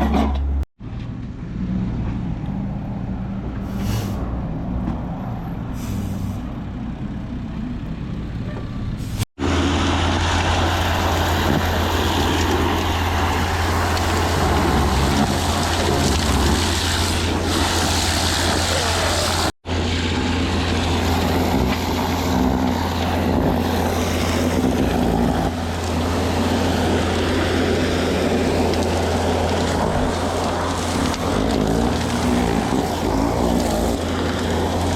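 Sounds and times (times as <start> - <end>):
heavy engine humming: 0.0 - 34.9.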